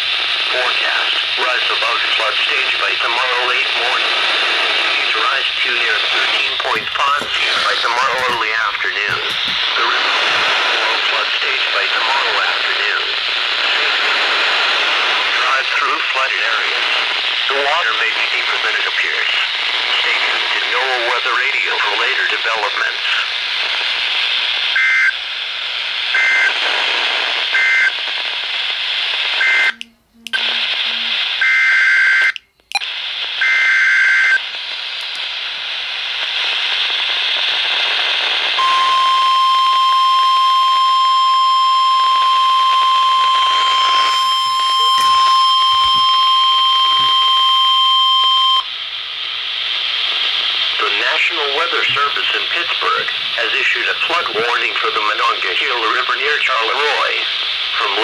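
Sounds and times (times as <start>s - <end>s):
radio static hiss: 0.0s - 31.5s, 32.2s - 41.2s, 41.9s - 58.0s
steady high-pitched alarm tone: 38.6s - 48.8s.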